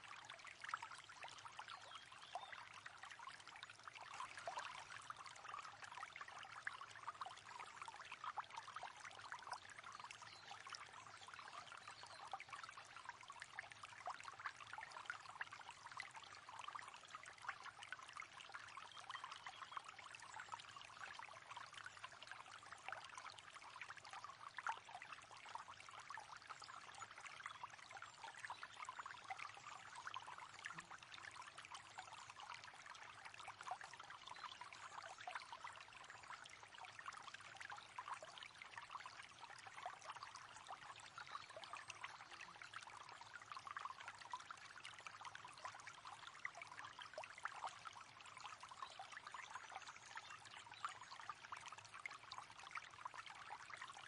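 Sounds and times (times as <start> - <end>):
river water flowing: 29.1 - 35.0.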